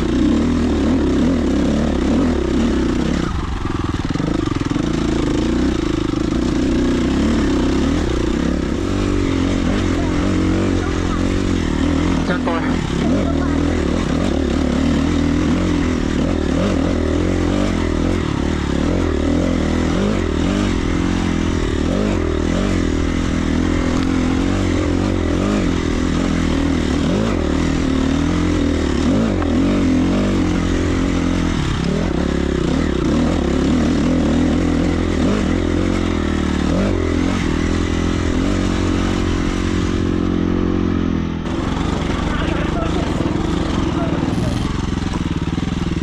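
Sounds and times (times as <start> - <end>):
dirt bike engine revving: 0.0 - 26.5, 44.3 - 45.6.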